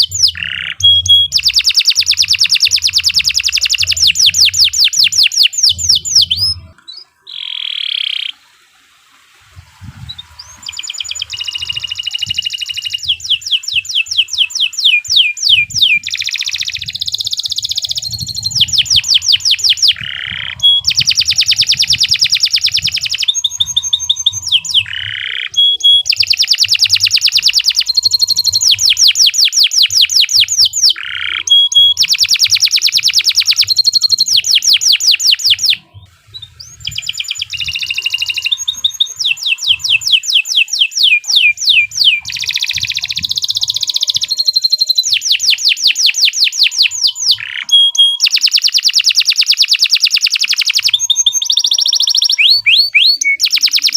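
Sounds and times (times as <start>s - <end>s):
canary singing trills: 0.0s - 8.5s, 10.0s - 53.9s.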